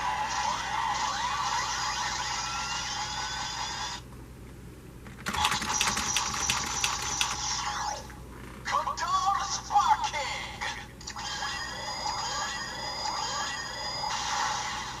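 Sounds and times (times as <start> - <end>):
rapid electronic clicks: 5.1 - 7.6.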